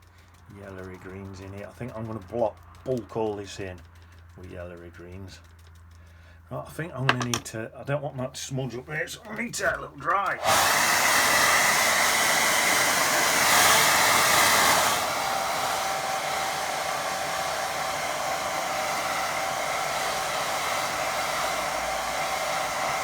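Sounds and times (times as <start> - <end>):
hair dryer blowing: 9.3 - 23.0.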